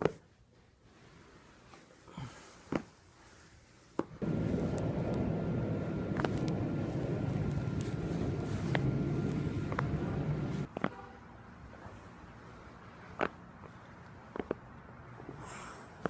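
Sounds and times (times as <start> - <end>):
faint steady whine: 4.2 - 10.7
steady low rumble: 4.2 - 10.7.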